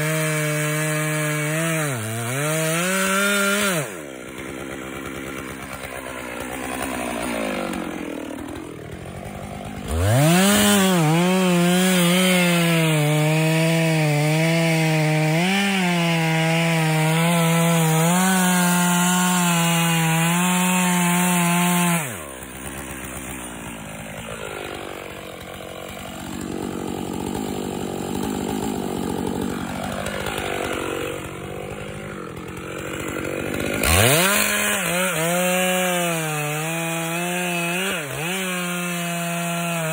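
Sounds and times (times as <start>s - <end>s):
chainsaw revving and cutting wood: 0.0s - 39.9s.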